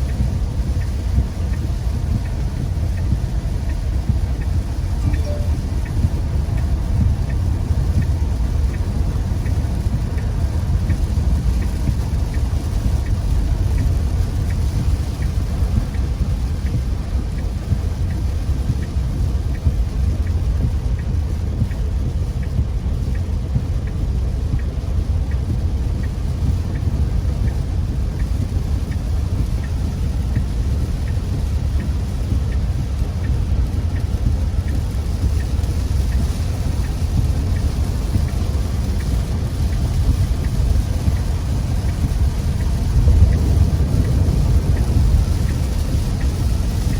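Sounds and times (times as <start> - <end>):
car and road rumble: 0.0 - 46.9
heavy rain on a car: 0.0 - 46.9.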